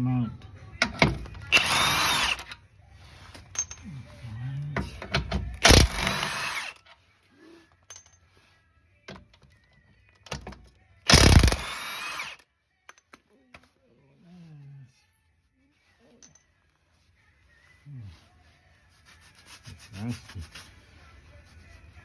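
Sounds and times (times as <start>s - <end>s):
power tool spinning bolts: 1.0s - 2.6s, 5.6s - 6.8s, 11.1s - 12.4s
tool clicking on metal: 5.2s - 6.8s, 11.1s - 12.4s.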